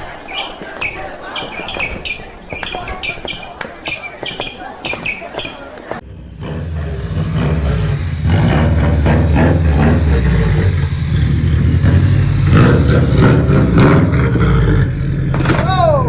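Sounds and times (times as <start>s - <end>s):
vehicle engine rumbling: 5.7s - 16.0s.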